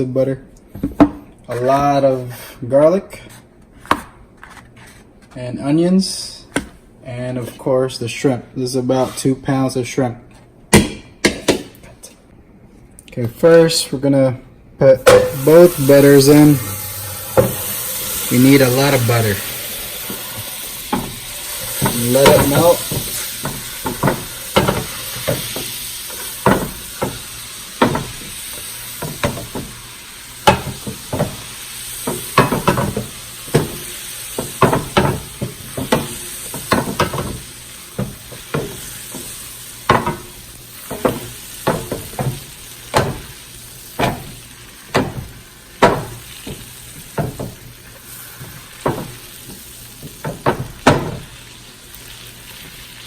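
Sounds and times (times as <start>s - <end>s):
butter sizzling in a pan: 15.1s - 53.0s.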